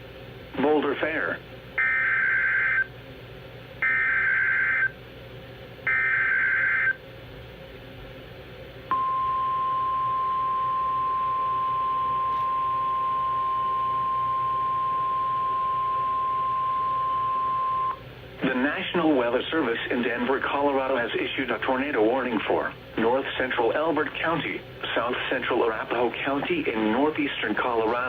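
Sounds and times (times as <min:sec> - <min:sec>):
steady warning alarm tone: 0:01.8 - 0:03.0, 0:03.8 - 0:05.0, 0:05.8 - 0:07.0, 0:08.9 - 0:18.0.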